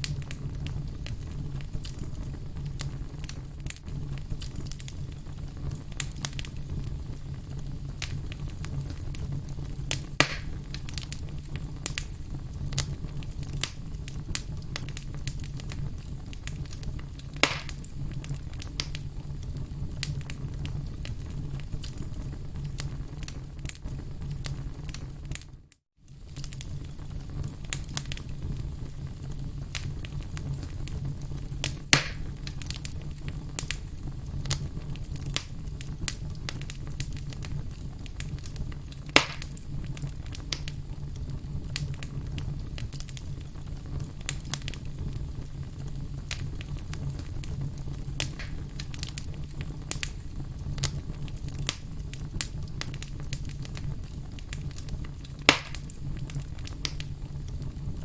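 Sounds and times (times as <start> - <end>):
firewood crackling and popping: 0.0 - 58.0
low rumble of flame: 0.0 - 58.0.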